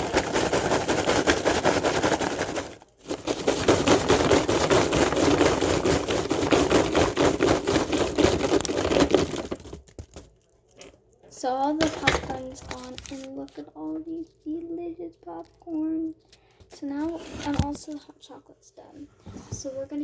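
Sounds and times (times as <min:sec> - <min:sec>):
popcorn poured into a bowl: 0:00.0 - 0:10.2.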